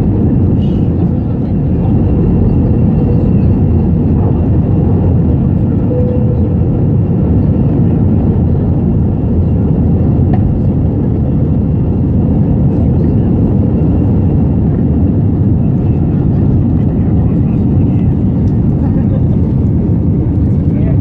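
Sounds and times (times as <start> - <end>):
aircraft cabin engine drone: 0.0 - 21.0
faint high steady tone: 5.8 - 6.7.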